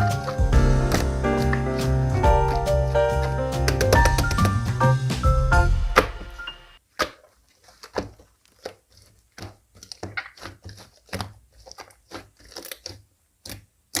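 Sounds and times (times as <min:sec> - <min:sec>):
crinkling or crunching noises: 0:06.8 - 0:14.0.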